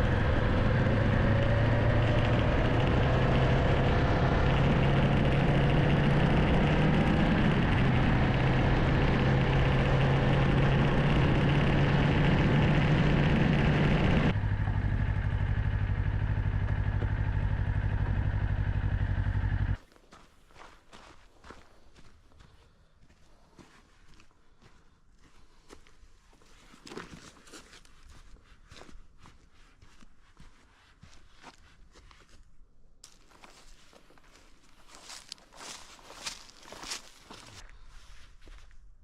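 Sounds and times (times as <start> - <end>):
wind and road rush: 0.0 - 19.7
motorcycle engine running: 0.0 - 19.8.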